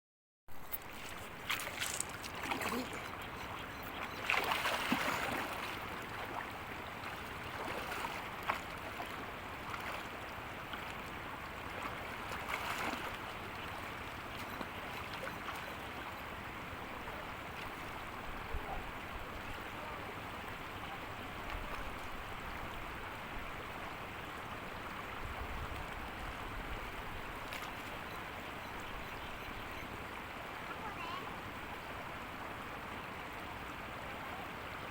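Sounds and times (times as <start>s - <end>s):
river water rushing: 0.6s - 34.9s.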